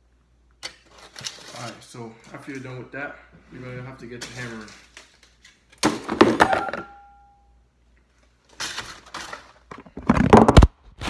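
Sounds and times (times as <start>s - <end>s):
metallic clank ringing: 6.4s - 7.5s.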